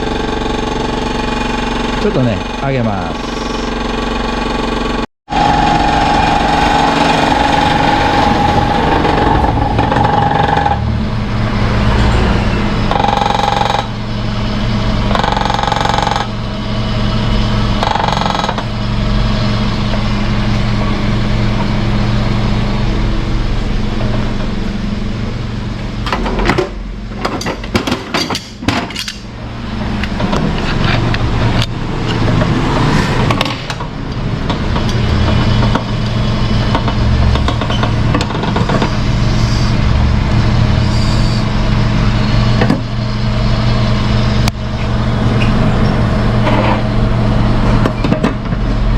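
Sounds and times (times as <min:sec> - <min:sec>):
car engine revving: 0:05.3 - 0:15.2.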